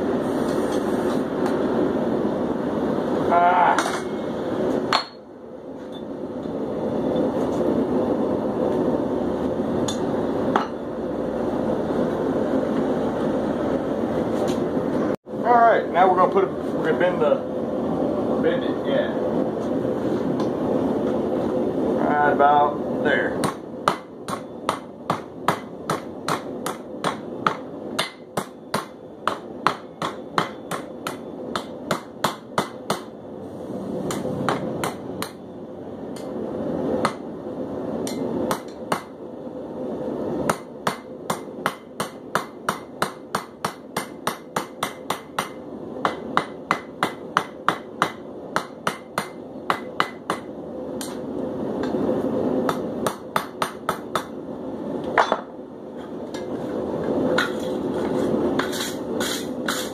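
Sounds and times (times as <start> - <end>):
forge burner roaring: 0.0 - 59.9
hammer striking steel on anvil: 4.9 - 5.2, 9.8 - 10.8, 23.4 - 33.1, 34.0 - 35.4, 38.0 - 39.1, 40.5 - 51.2, 52.7 - 54.4.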